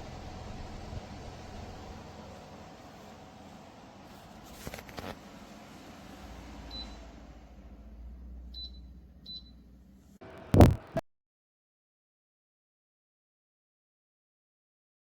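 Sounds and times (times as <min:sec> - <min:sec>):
fan airflow hiss and hum: 0:00.0 - 0:11.0
clicks: 0:10.3 - 0:11.0
short high electronic beeps: 0:10.5 - 0:10.9.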